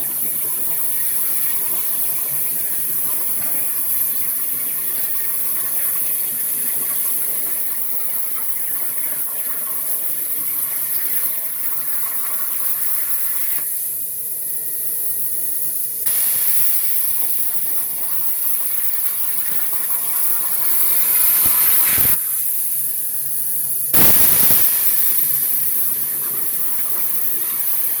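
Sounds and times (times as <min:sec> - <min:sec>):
plasma cutter torch hissing: 0:13.0 - 0:14.0, 0:16.0 - 0:23.3, 0:24.0 - 0:28.0.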